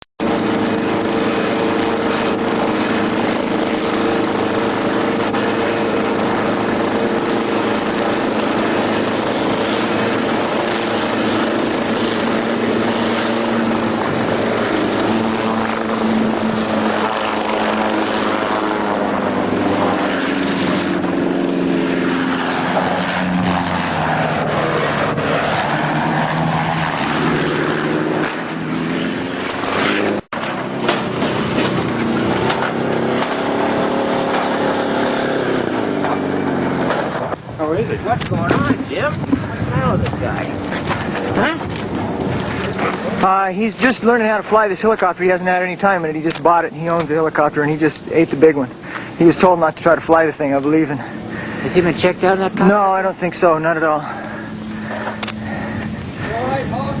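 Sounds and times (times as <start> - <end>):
helicopter engine and rotor: 0.2 - 57.0.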